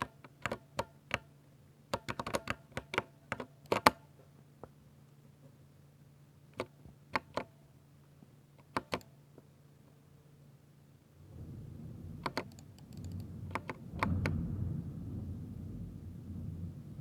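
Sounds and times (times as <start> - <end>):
mechanical keyboard typing: 0.0 - 1.3, 1.9 - 4.0, 6.6 - 7.6, 8.6 - 9.2, 12.2 - 14.4.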